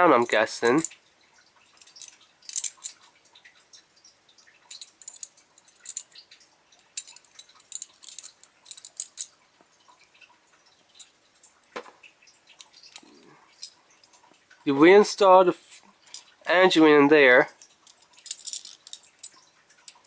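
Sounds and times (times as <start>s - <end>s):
small parts clicking together: 1.8s - 3.1s, 4.7s - 6.4s, 7.0s - 9.3s, 12.5s - 14.2s, 17.5s - 20.0s.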